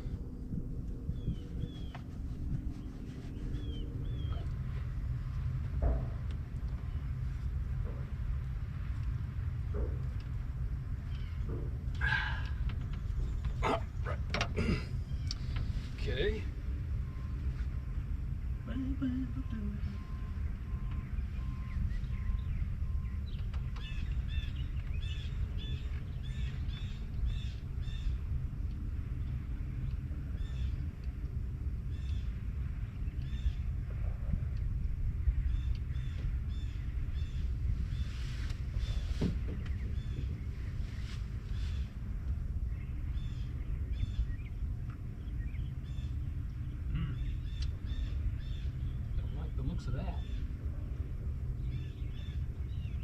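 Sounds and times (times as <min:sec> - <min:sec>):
steady low rumble: 0:00.0 - 0:53.0
birds harsh calls: 0:11.0 - 0:16.4, 0:35.3 - 0:53.0.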